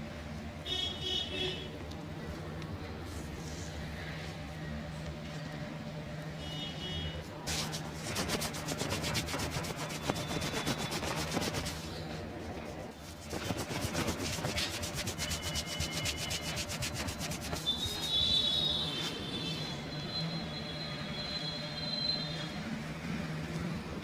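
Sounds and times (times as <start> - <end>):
hands rubbing skin and hair: 7.5 - 11.9, 13.0 - 18.1.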